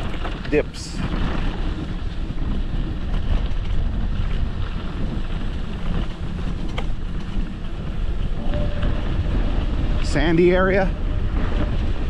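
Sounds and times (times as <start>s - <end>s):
electric scooter rumble: 0.0s - 12.0s
wind buffeting microphone: 0.0s - 12.0s.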